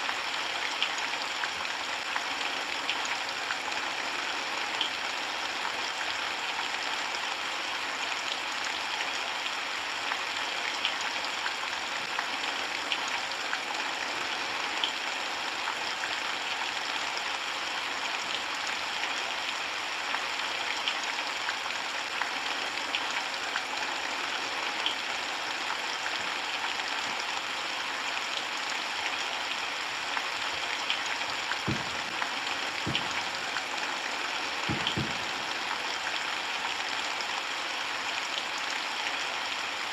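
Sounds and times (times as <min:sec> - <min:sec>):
steady rainfall: 0:00.0 - 0:39.9
water drips ticking: 0:30.2 - 0:36.8
dull low thuds: 0:31.6 - 0:33.5, 0:34.7 - 0:35.5.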